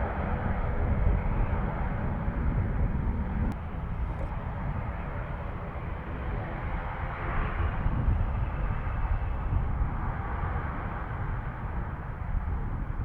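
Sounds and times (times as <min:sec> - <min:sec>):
airliner engine rumble: 0:00.0 - 0:13.0.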